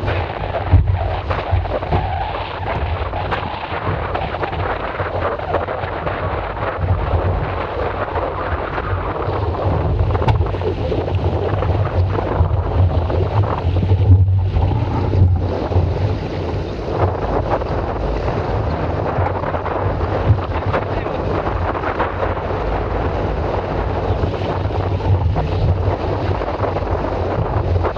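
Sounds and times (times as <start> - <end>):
rushing water: 0.0 - 27.9
wind buffeting microphone: 0.0 - 27.9.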